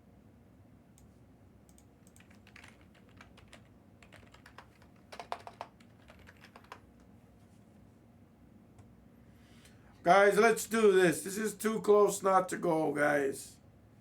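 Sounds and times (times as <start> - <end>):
computer keyboard typing: 1.7 - 7.0.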